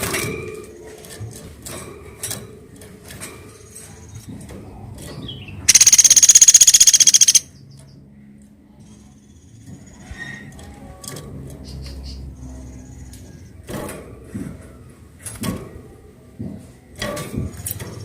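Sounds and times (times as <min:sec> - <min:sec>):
faint woodpecker taps: 0:05.7 - 0:07.4
woodpecker rattling trill: 0:05.7 - 0:07.5.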